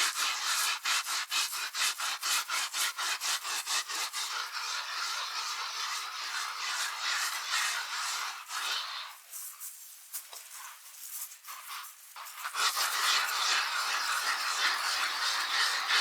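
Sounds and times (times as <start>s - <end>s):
carpet being scrubbed: 0.0s - 9.3s, 12.2s - 16.0s.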